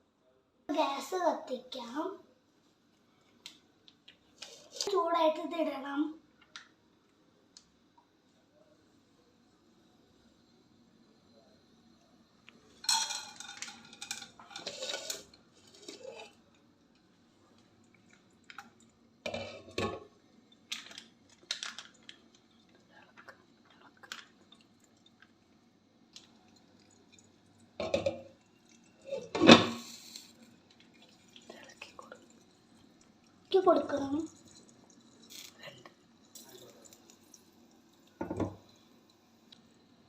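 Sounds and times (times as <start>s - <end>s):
faint steady hum: 0.0s - 40.0s
pan and utensils clanking: 12.8s - 16.4s, 29.0s - 30.2s.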